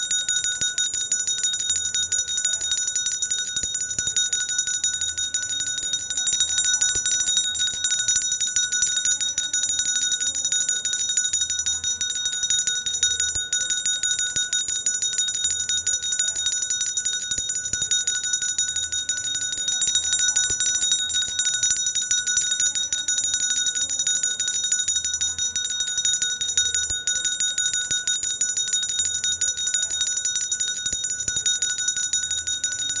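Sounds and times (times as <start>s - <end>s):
hand bell ringing: 0.0s - 33.0s.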